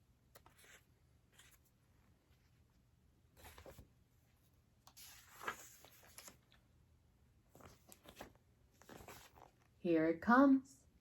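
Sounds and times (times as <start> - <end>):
book page rustling: 0.3 - 2.7, 3.3 - 6.6, 7.4 - 9.8.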